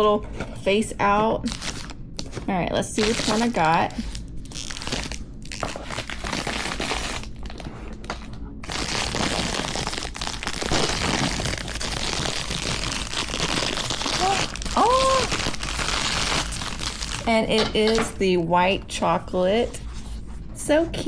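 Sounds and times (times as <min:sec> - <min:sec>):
plastic packaging crinkling: 0:01.4 - 0:17.5.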